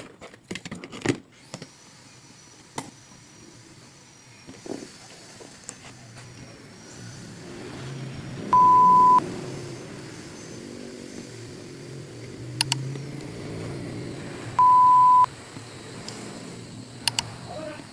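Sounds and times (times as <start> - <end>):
electronic beeps: 8.5 - 9.2, 14.6 - 15.3.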